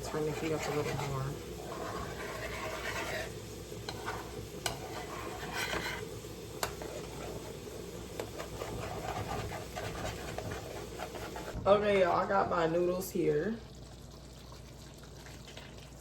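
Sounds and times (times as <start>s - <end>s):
utensil scraping a pan: 0.0s - 12.3s
low sizzle: 0.0s - 16.0s.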